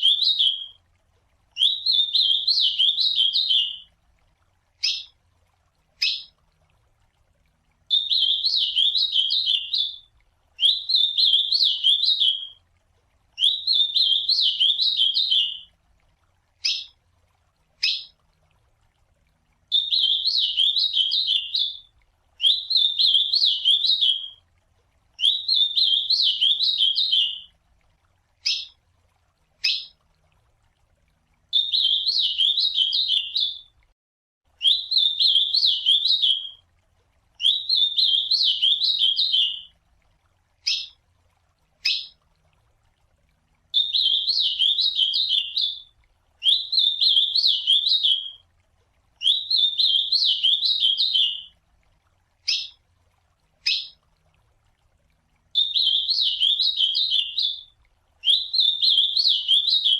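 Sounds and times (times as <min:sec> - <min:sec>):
bird whistled warbling song: 0:00.0 - 0:00.8, 0:01.6 - 0:03.9, 0:04.8 - 0:05.2, 0:06.0 - 0:06.4, 0:07.9 - 0:12.6, 0:13.4 - 0:15.7, 0:16.6 - 0:17.0, 0:17.8 - 0:18.2, 0:19.7 - 0:24.4, 0:25.2 - 0:27.5, 0:28.4 - 0:28.8, 0:29.6 - 0:30.0, 0:31.5 - 0:33.7, 0:34.6 - 0:36.6, 0:37.4 - 0:39.7, 0:40.6 - 0:41.0, 0:41.8 - 0:42.2, 0:43.7 - 0:48.4, 0:49.2 - 0:51.5, 0:52.4 - 0:52.8, 0:53.6 - 0:54.0, 0:55.5 - 0:59.9.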